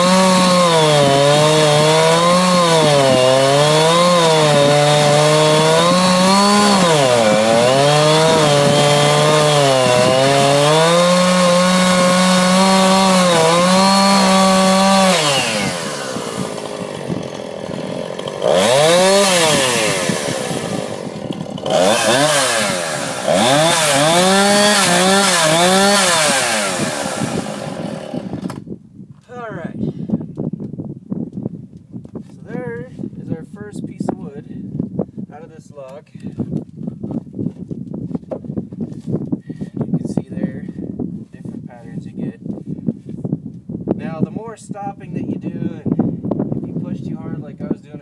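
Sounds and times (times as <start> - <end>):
chainsaw revving: 0.0 - 28.6
chainsaw cutting log: 0.0 - 28.7.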